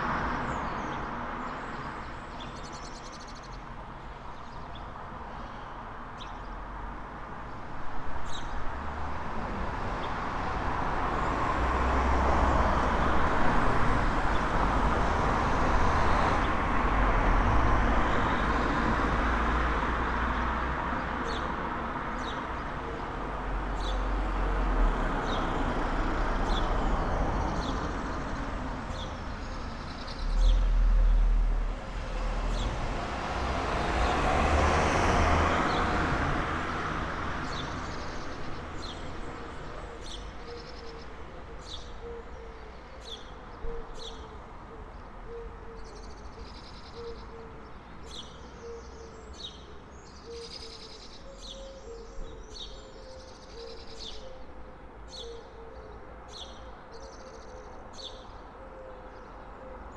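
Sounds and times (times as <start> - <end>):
road traffic passing: 0.0 - 45.4
bird chirping: 26.4 - 32.8, 48.0 - 54.5, 55.1 - 58.3.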